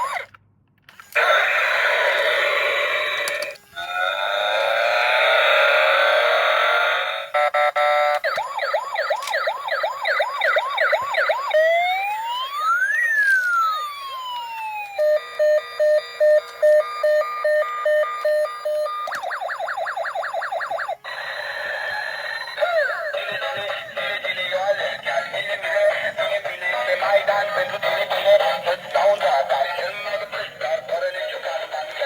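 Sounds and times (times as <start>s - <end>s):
toy electronic siren: 0.0s - 0.4s, 1.0s - 32.0s.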